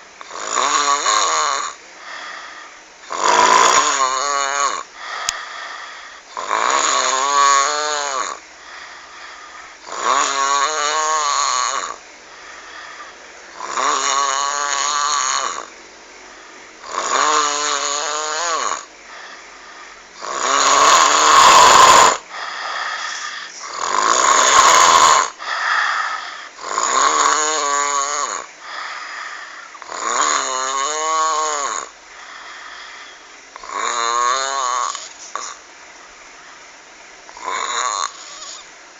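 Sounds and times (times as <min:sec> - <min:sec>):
person snoring: 0:00.2 - 0:15.7, 0:16.8 - 0:35.6, 0:37.3 - 0:38.7.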